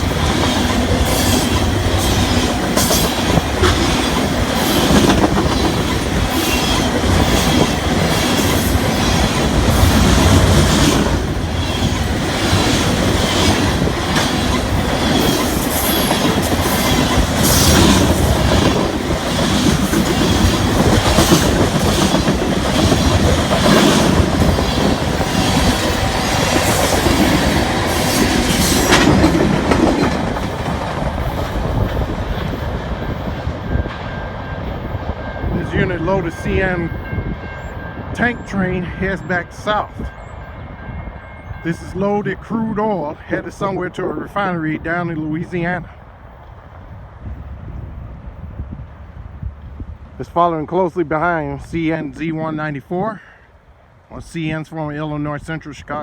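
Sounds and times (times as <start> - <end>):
train wheels clicking over rail joints: 0.0 - 40.1
freight train rumble: 0.0 - 56.0.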